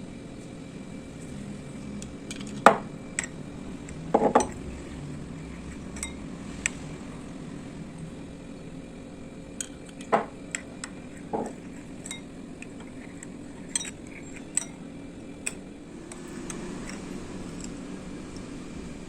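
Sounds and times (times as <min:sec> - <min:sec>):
utensils clinking on glass and dishes: 0:02.0 - 0:06.8, 0:09.5 - 0:16.2.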